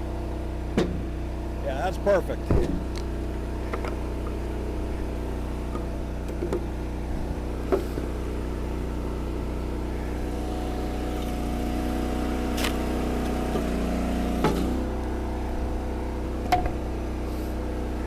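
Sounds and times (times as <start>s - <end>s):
engine running steadily: 0.0s - 18.0s
high steady whine: 0.0s - 18.0s
sharp knocks: 2.5s - 2.8s.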